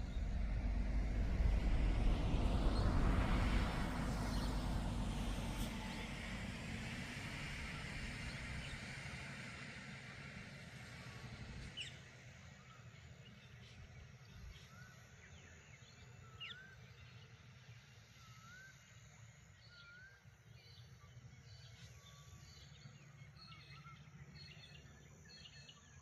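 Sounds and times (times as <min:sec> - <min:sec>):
distant surf: 0:00.0 - 0:11.4
wind: 0:00.0 - 0:26.0
faint bird chirps: 0:18.1 - 0:26.0.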